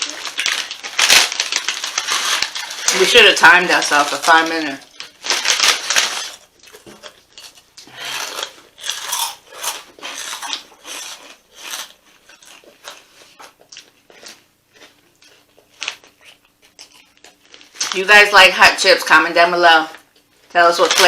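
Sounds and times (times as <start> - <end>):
chips being crunched: 0.0 - 7.6, 8.2 - 13.0.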